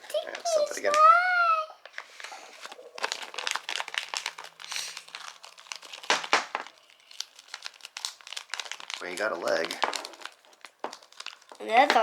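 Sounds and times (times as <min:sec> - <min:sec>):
plastic crinkling and crackling: 0:00.0 - 0:12.0.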